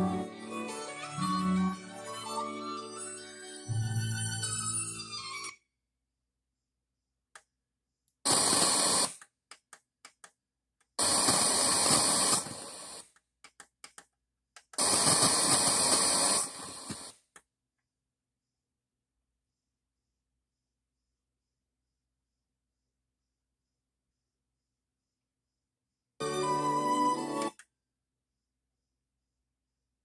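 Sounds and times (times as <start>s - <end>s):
radio static hiss: 8.3s - 9.2s, 11.0s - 13.1s, 14.8s - 17.2s.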